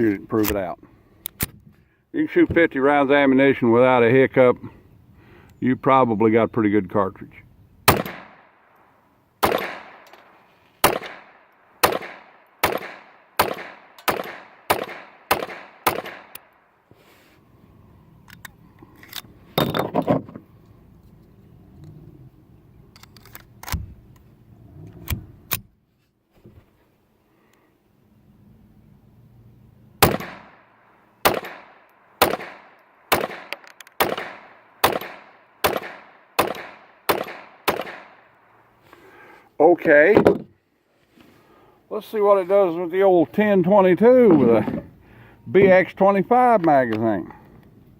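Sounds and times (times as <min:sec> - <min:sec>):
pistol shots with ringing echo: 0:07.9 - 0:08.7, 0:09.4 - 0:16.5, 0:30.0 - 0:38.3.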